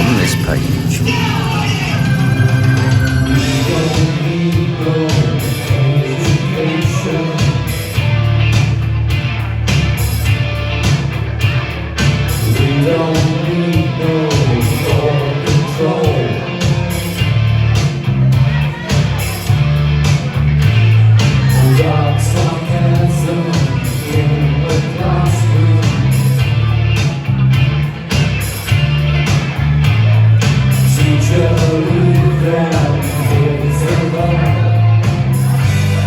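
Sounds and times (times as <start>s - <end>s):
stepping bass line: 0.0s - 36.0s
people singing: 30.9s - 34.8s.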